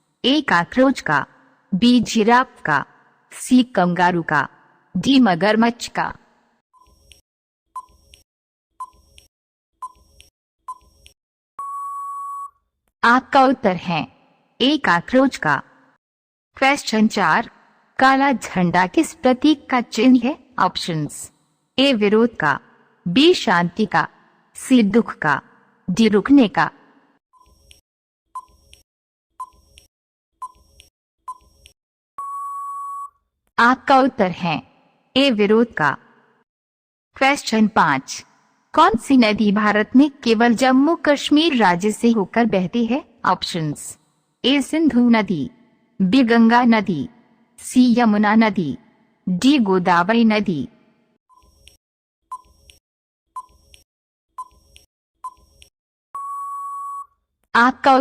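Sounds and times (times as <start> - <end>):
long steady beep: 11.6 - 12.6, 32.2 - 33.2, 56.2 - 57.1
short beeps: 11.6 - 12.6, 32.2 - 33.2, 56.2 - 57.1.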